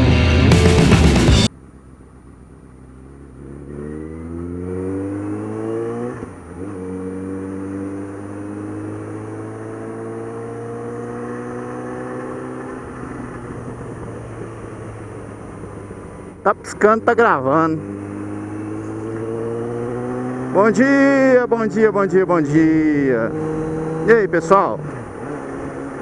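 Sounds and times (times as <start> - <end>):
motorcycle engine accelerating: 0.0 - 26.0.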